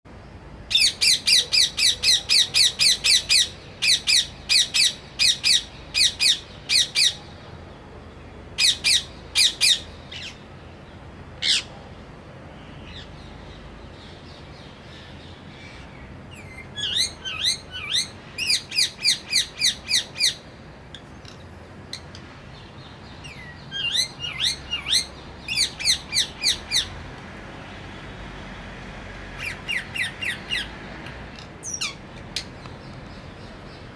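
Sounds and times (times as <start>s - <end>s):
parrot squawking: 29.4s - 30.7s.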